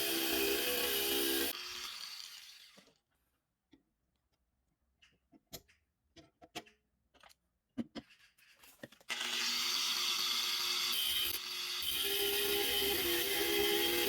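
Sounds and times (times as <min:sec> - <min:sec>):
power tool whining: 0:00.0 - 0:02.7, 0:09.1 - 0:14.0
tools clicking and knocking: 0:04.9 - 0:09.0.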